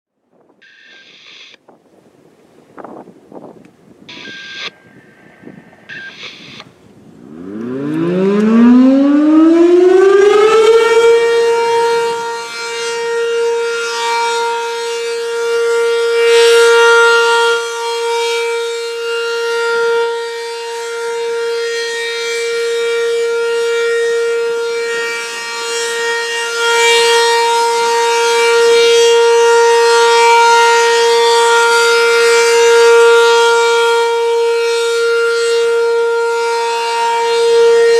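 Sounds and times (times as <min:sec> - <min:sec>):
outdoor warning siren: 0:00.3 - 0:37.9.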